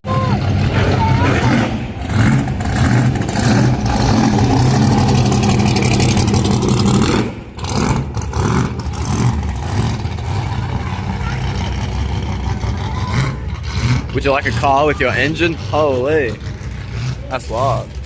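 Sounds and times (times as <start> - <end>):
car engine droning: 0.0 - 18.0.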